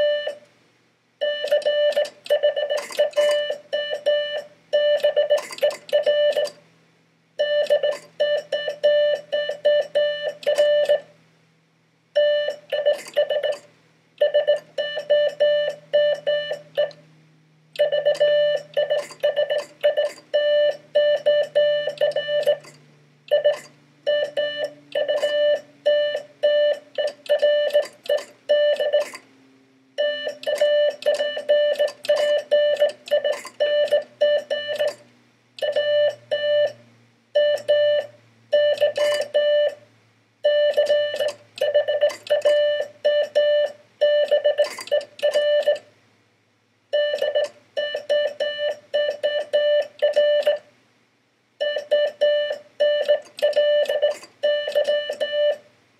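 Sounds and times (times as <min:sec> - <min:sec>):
morse code tone: 0:00.0 - 0:00.4, 0:01.2 - 0:06.6, 0:07.4 - 0:11.1, 0:12.2 - 0:17.0, 0:17.8 - 0:29.2, 0:30.0 - 0:35.0, 0:35.6 - 0:36.8, 0:37.4 - 0:39.8, 0:40.4 - 0:45.8, 0:47.0 - 0:50.7, 0:51.6 - 0:55.6.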